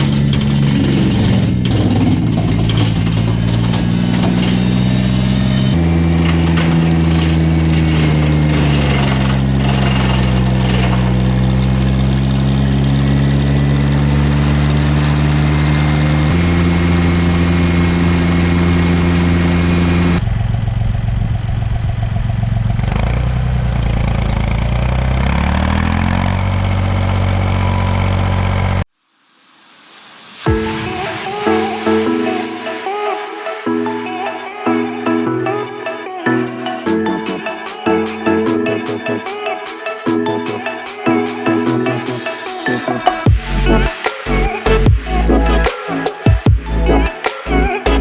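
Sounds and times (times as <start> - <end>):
wood chipper engine running: 0.0 - 20.5.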